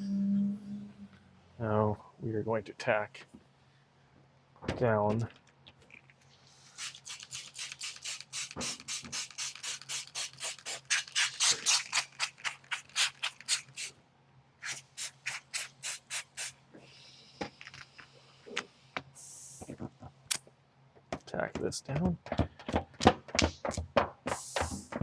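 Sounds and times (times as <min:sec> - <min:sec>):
short hiss: 0:06.4 - 0:13.9, 0:14.6 - 0:18.6, 0:19.2 - 0:19.8, 0:24.3 - 0:25.0
rubbing strokes on wet film: 0:06.7 - 0:13.9, 0:14.6 - 0:16.6, 0:24.3 - 0:25.0.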